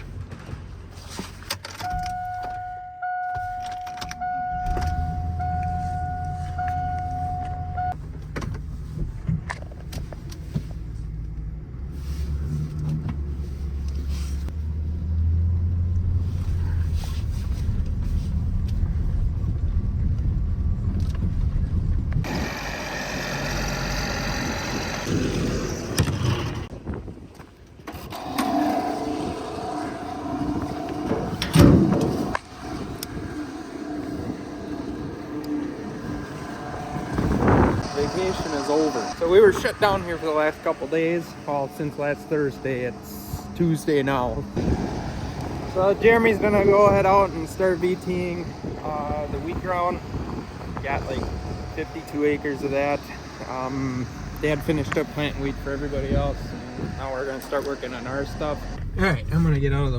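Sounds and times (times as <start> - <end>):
engine rumbling: 0.0 - 59.9
vehicle warning chime beeps: 1.8 - 8.0
gusty wind noise: 16.4 - 22.7, 24.5 - 57.4.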